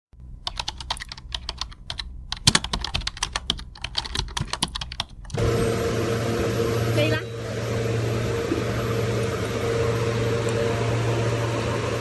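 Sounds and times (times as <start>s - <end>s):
rapid clicking and tapping: 0.5s - 5.4s.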